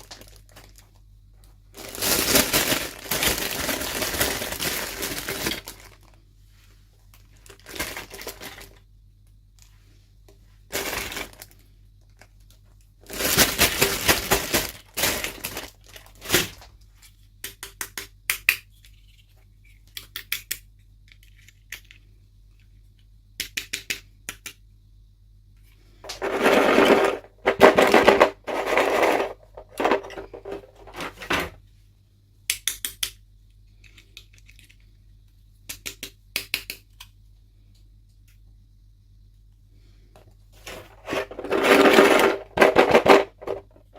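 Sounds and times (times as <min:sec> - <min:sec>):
plastic packaging rustling: 0:00.0 - 0:06.2, 0:07.3 - 0:08.8, 0:10.7 - 0:16.8, 0:26.0 - 0:31.5, 0:40.6 - 0:43.9.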